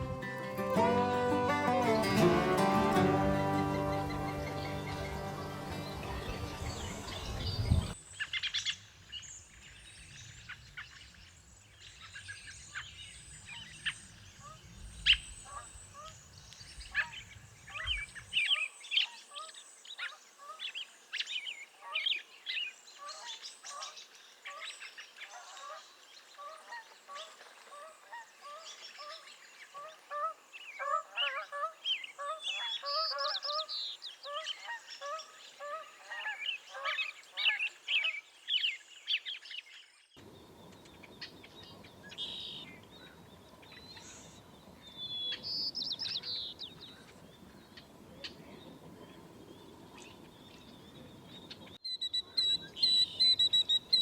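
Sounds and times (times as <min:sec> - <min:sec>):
higher bird chirps: 0:00.0 - 0:08.0
birds calling: 0:00.0 - 0:08.6, 0:40.2 - 0:54.0.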